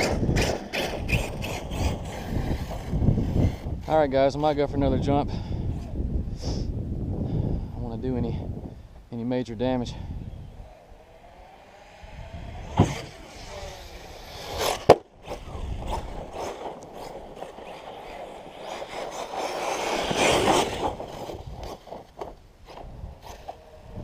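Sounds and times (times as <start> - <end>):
toy truck tyres crunching on gravel: 0.0 - 4.4, 10.6 - 24.0.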